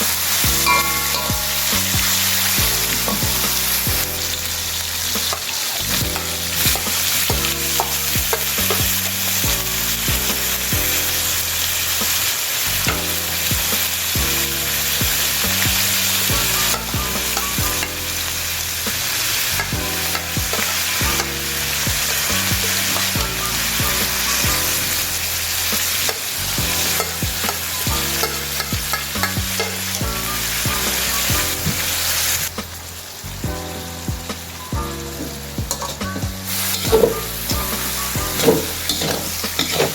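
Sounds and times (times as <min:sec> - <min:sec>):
food frying in hot oil: 0:00.0 - 0:39.9.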